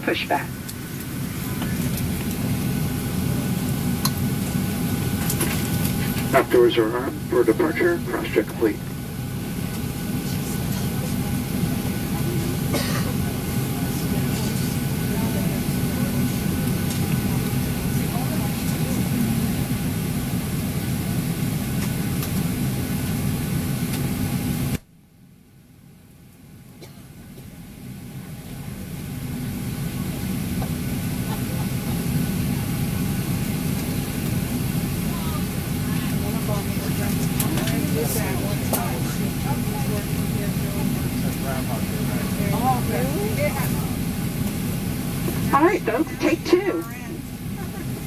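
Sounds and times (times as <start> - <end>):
airplane cabin drone: 0.0 - 48.0
person coughing: 12.7 - 13.2.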